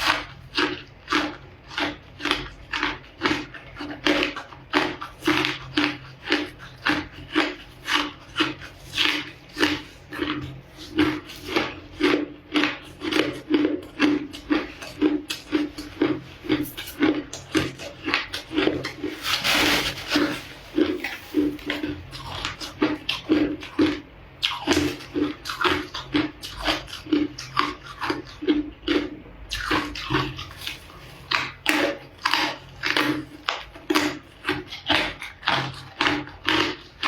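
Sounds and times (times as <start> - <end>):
ice crunching between teeth: 0.0 - 23.8.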